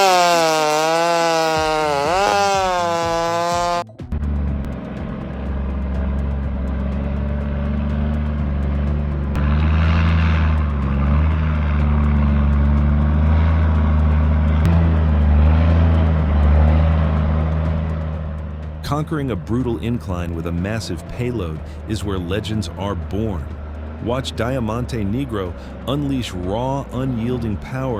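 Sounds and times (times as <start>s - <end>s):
chainsaw whine: 0.0s - 3.9s, 19.5s - 27.7s
rough mechanical noise: 0.0s - 27.9s
truck diesel engine droning: 0.0s - 27.9s.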